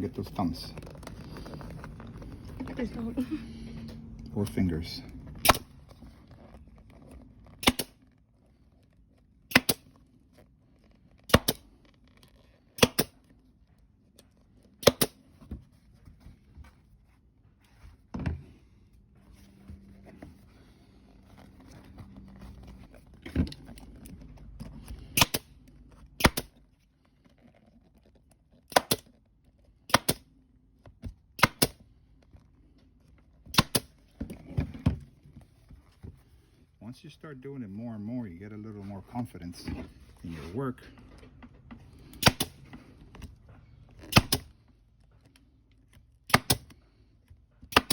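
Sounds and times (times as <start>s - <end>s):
pneumatic staple gun firing: 5.4s - 5.7s, 7.6s - 7.9s, 9.5s - 9.8s, 12.8s - 13.1s, 14.8s - 15.2s, 25.2s - 25.5s, 26.2s - 26.5s, 29.9s - 30.2s, 42.2s - 42.6s, 44.1s - 44.5s, 46.3s - 46.7s.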